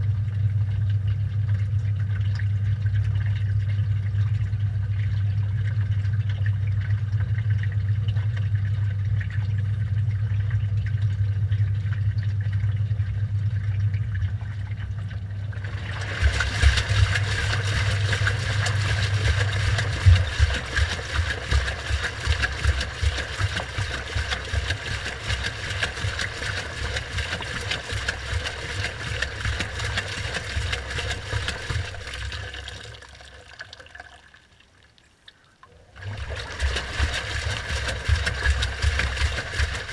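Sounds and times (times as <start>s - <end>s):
washing machine hum: 0.0s - 34.3s, 35.7s - 39.9s
water rushing and sloshing: 2.5s - 39.9s
low thuds in drum: 19.2s - 24.4s.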